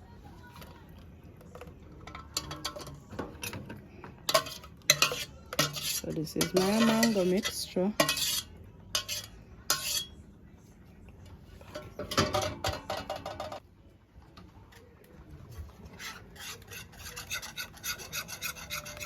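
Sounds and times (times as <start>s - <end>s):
utensil scraping a container: 4.3s - 10.1s, 15.9s - 19.0s.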